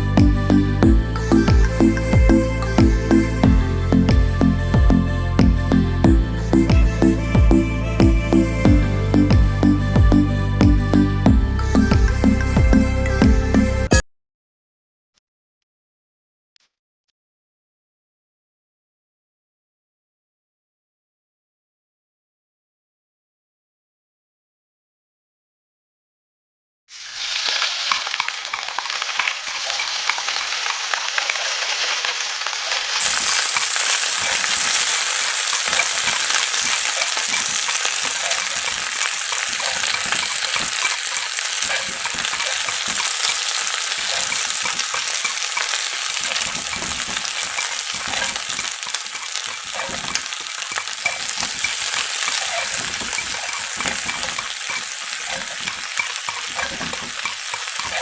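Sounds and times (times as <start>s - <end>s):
chicken deep-frying in oil: 26.9s - 58.0s.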